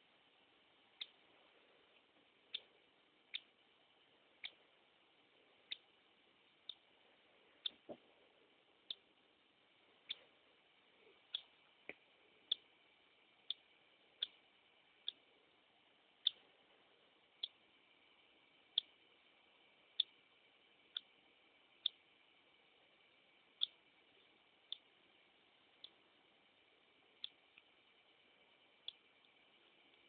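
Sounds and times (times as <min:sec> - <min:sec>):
faint hiss: 0:00.0 - 0:30.0
baby bird high-pitched peep: 0:00.9 - 0:01.3, 0:02.5 - 0:03.6, 0:04.4 - 0:04.7, 0:05.6 - 0:06.9, 0:08.8 - 0:09.1, 0:10.0 - 0:10.3, 0:11.2 - 0:15.3, 0:15.9 - 0:16.5, 0:17.2 - 0:22.4, 0:23.1 - 0:28.0, 0:28.6 - 0:30.0.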